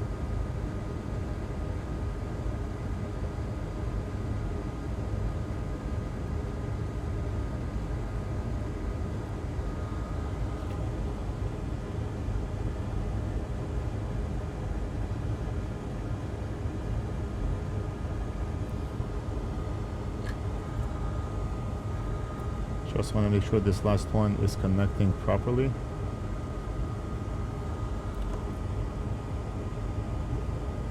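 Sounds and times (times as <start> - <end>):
machinery hum and hiss: 0.0 - 30.9
faint high whine: 6.8 - 30.9.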